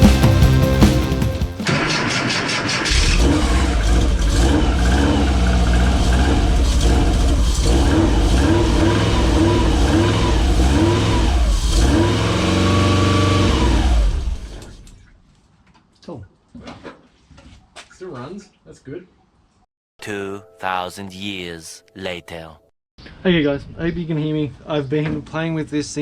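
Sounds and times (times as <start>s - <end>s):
engine revving: 2.8s - 14.3s.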